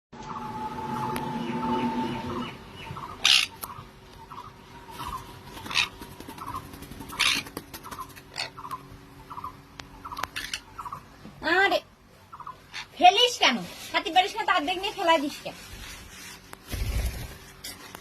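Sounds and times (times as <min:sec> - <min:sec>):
parrots chirping: 0:02.8 - 0:11.1
parrot harsh squawk: 0:03.2 - 0:03.6.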